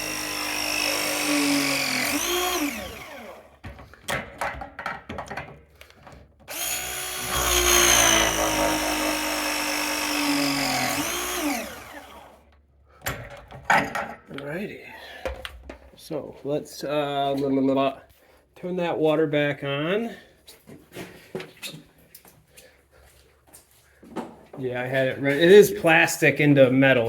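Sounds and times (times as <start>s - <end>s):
power drill running: 0.0s - 3.6s, 6.5s - 12.4s
tool handling clicks and knocks: 3.6s - 6.6s, 13.0s - 14.4s.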